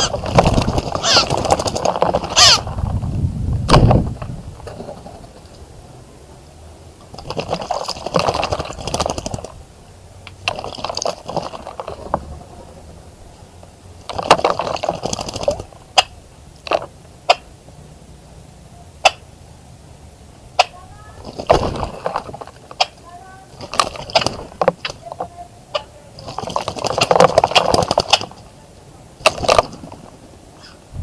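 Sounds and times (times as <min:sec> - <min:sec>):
bird splashing in water: 0:00.0 - 0:02.6, 0:07.1 - 0:09.6, 0:10.3 - 0:12.2, 0:14.0 - 0:15.8, 0:21.2 - 0:22.9, 0:23.5 - 0:25.1, 0:26.2 - 0:28.4, 0:29.2 - 0:30.0.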